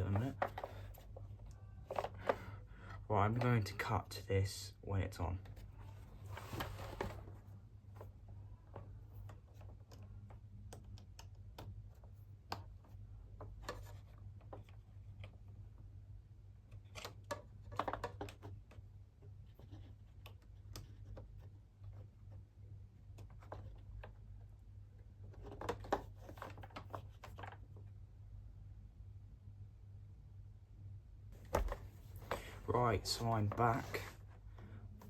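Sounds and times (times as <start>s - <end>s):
steady low hum: 27.1s - 35.0s.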